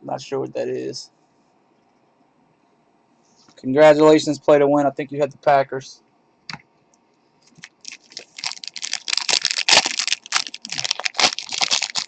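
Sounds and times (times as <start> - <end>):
wrapper crinkling and tearing: 7.5 - 12.0.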